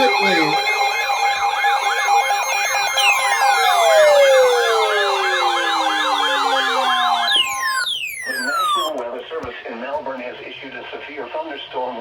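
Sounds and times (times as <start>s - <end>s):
electronic warbling siren: 0.0s - 9.0s
tones sliding downward in pitch: 1.8s - 9.0s
steady alert tone: 3.0s - 9.0s.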